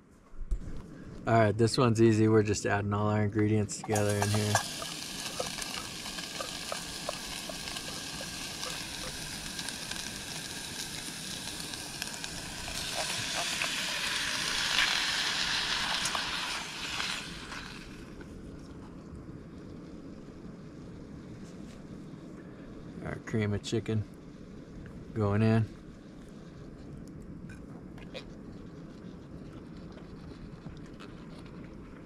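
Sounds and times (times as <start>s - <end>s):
stirring clicks and scrapes: 3.8s - 14.0s
food sizzling in a pot: 3.9s - 18.2s.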